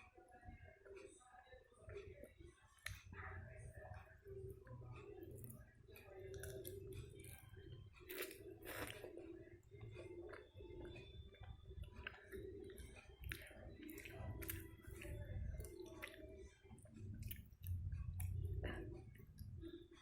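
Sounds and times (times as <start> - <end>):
chewing: 4.0 - 19.8.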